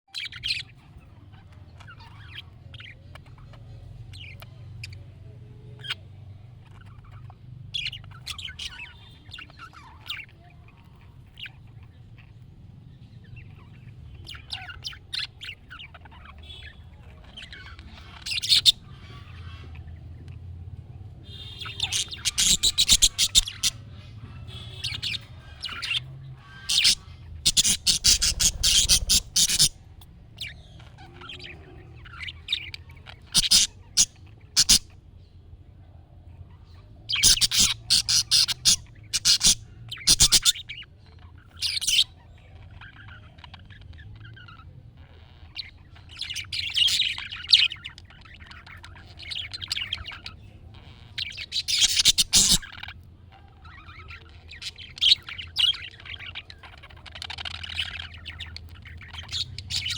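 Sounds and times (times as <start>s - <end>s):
budgerigar chirping and chattering: 0.1s - 20.5s, 21.2s - 35.3s, 36.4s - 59.9s.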